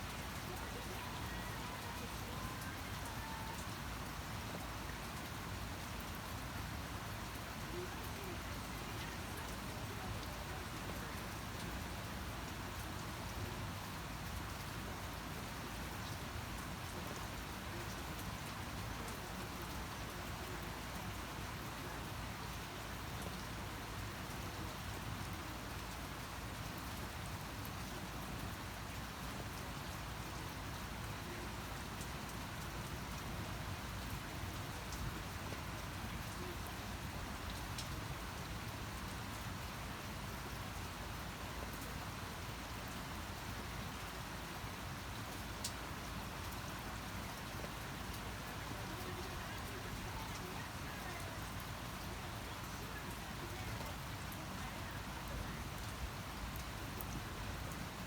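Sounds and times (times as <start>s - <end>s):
rain pattering on a surface: 0.0s - 58.0s.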